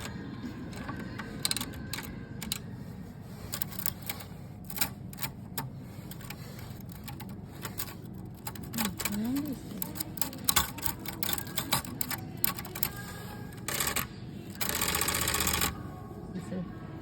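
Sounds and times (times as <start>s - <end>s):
typewriter key strikes: 6.1s - 13.0s.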